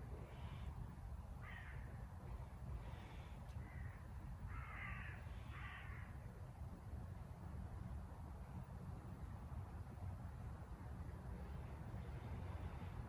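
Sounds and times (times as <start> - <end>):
crow cawing: 1.4 - 1.9, 3.6 - 6.1.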